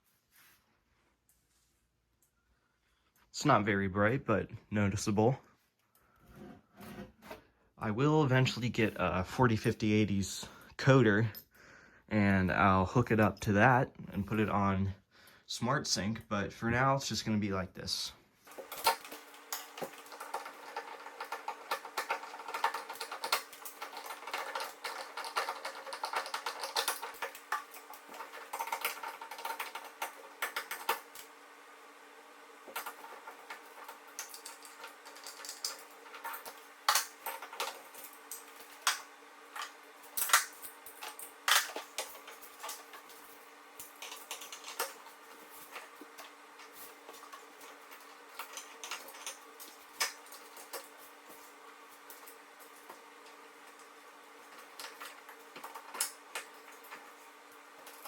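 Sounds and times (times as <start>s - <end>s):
small hard objects clattering: 18.5s - 31.2s, 32.6s - 58.0s.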